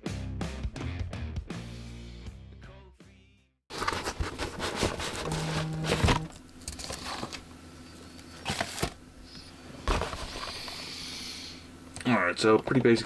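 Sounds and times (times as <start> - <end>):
packaging crinkling: 3.7 - 9.0.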